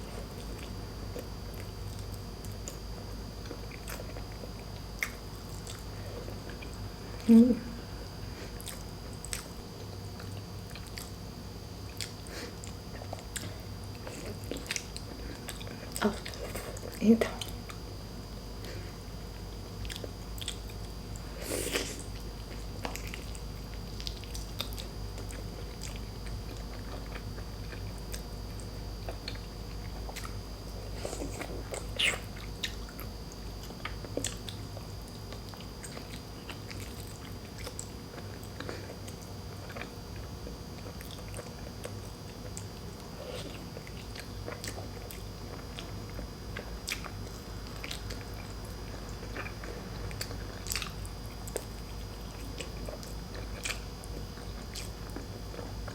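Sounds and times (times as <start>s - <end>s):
person chewing and biting food: 18.5s - 55.9s.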